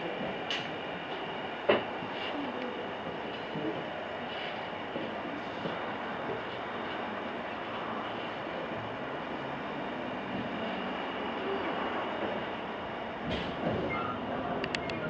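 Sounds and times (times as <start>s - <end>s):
train rolling rumble: 0.0s - 15.0s.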